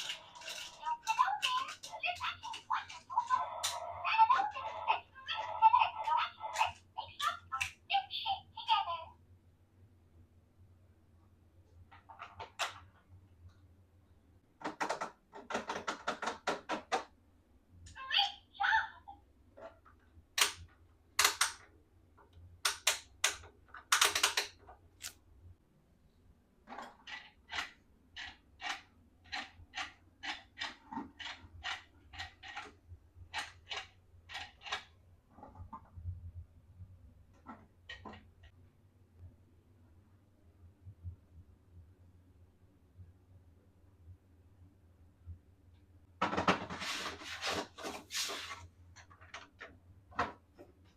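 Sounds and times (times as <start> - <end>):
plastic parts rattling: 0.0 - 3.8
plastic toy parts clicking: 0.0 - 3.9, 20.4 - 21.7, 22.6 - 25.2.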